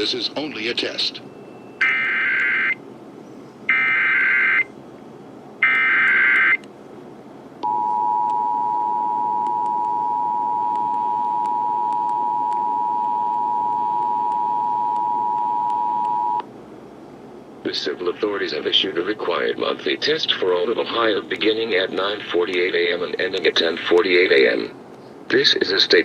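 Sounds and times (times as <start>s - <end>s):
two-tone attention signal: 7.6s - 16.4s.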